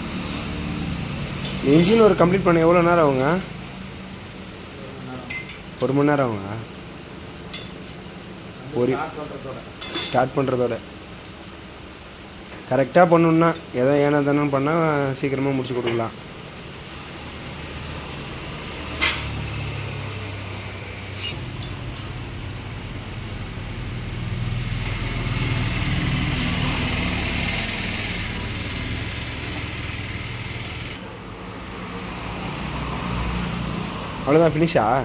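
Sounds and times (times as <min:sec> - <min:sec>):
engine low hum: 0:00.0 - 0:35.0
sharp metallic clinks: 0:01.3 - 0:02.6, 0:09.4 - 0:10.5, 0:21.1 - 0:22.1.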